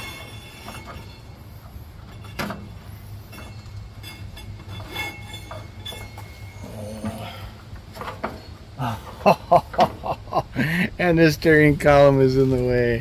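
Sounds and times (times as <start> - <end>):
metallic clinks and rattles: 0.0 - 7.0
low steady hum: 0.0 - 13.0.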